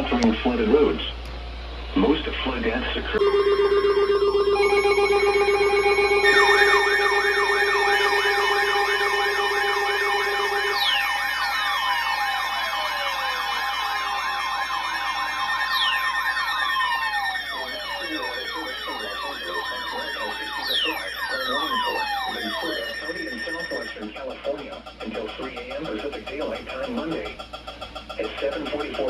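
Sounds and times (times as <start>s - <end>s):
steady siren tones: 1.5s - 29.0s
wailing siren: 3.2s - 24.0s
yelping siren: 3.2s - 24.0s.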